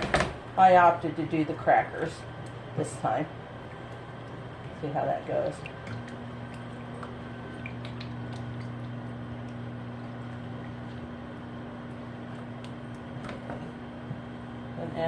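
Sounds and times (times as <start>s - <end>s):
steady low hum: 0.0s - 15.0s
squishy stirring in a bowl: 3.5s - 14.3s.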